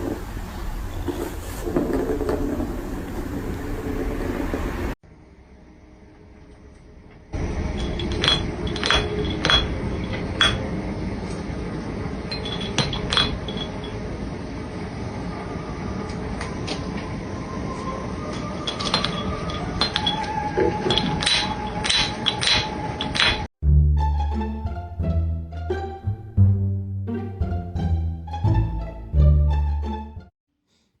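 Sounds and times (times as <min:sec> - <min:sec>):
steady background noise: 0:00.0 - 0:23.5.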